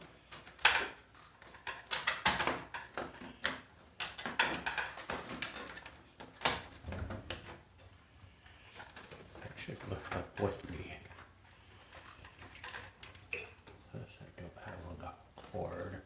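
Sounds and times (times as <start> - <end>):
plastic keyboard parts clicking and rattling: 0.3 - 7.1.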